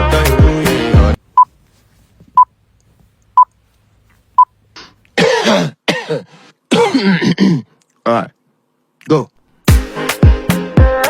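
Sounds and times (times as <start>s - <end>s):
person coughing: 5.1s - 7.8s.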